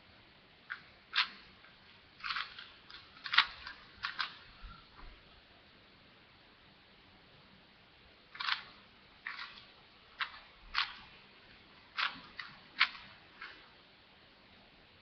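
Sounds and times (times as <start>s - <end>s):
puzzle cube plastic clacks: 0.7s - 1.5s, 2.2s - 4.5s, 8.4s - 11.2s, 11.9s - 13.6s.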